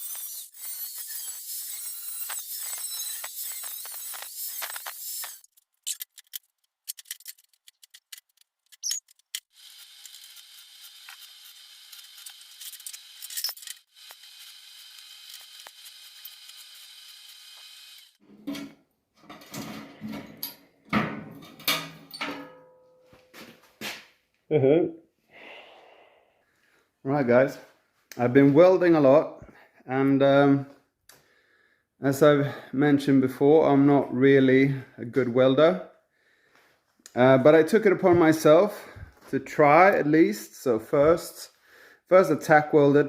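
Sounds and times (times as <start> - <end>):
harsh high-pitched tool noise: 0.0 - 6.1, 8.8 - 18.2.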